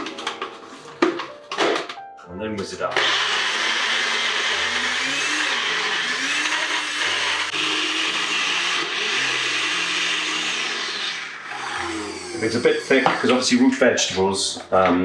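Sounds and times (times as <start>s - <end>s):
electric blender running: 2.9s - 13.7s.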